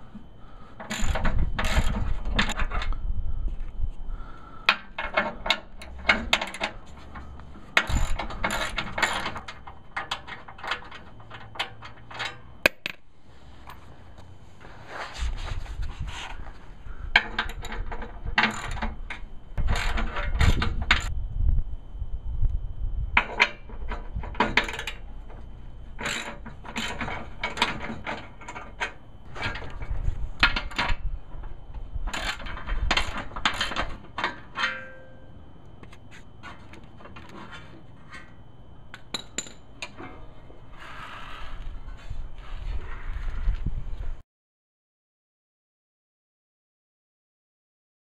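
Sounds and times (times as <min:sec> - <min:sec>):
socket ratchet clicking: 0:07.8 - 0:09.4.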